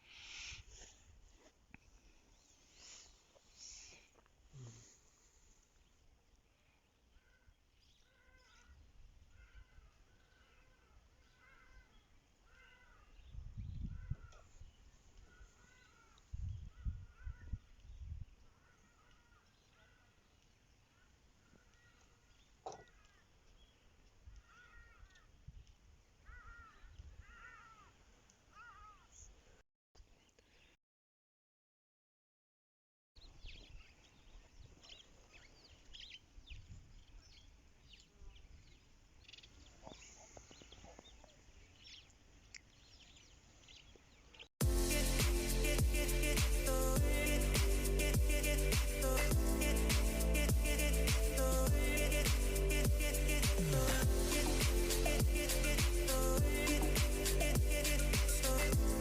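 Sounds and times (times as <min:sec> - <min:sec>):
distant birds calling: 0:06.9 - 0:25.4, 0:26.2 - 0:29.1, 0:38.6 - 0:59.0.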